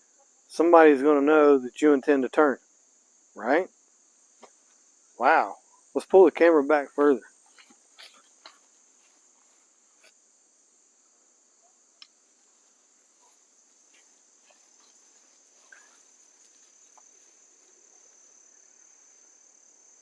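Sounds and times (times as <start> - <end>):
faint insect drone: 0.0 - 20.0
faint clicks: 12.0 - 12.2.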